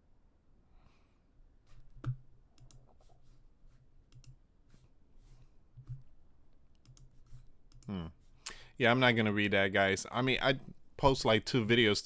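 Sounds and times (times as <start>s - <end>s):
mouse and keyboard clicking: 2.0s - 2.9s, 4.1s - 4.4s, 6.7s - 7.9s.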